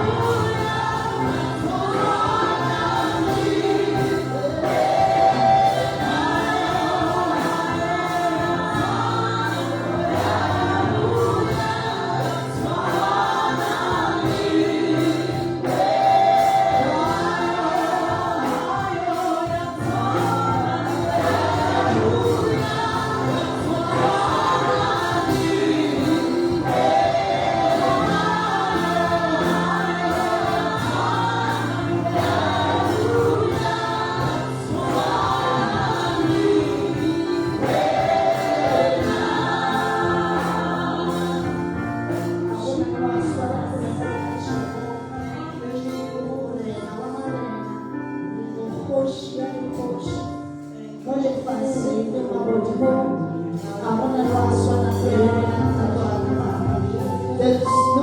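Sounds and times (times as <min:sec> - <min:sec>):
choir singing gospel song: 0:00.0 - 0:58.0.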